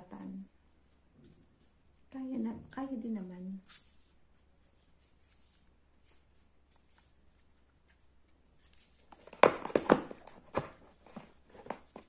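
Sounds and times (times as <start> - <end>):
plastic clacks and rustles: 9.0 - 12.0.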